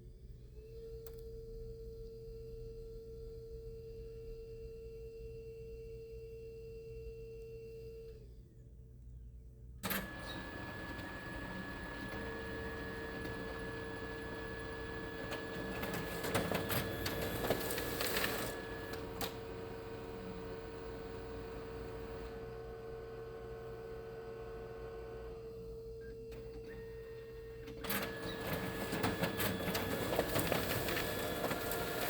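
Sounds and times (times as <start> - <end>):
printer mechanism whining: 9.8 - 32.0.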